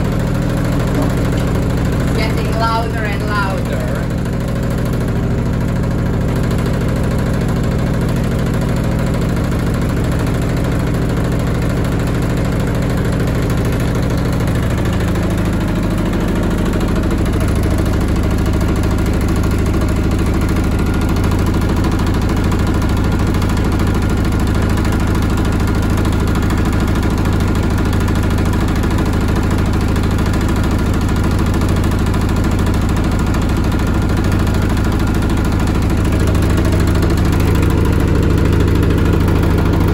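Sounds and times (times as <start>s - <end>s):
washing machine motor hum: 0.0s - 39.9s.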